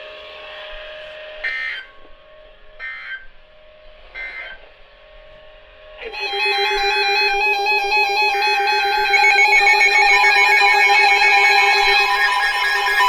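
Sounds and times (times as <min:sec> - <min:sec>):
steady attention tone: 0:06.0 - 0:13.0.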